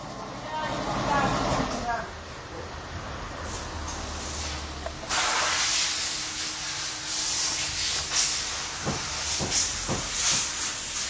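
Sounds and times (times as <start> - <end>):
pressurized air jet hissing: 3.4 - 11.0.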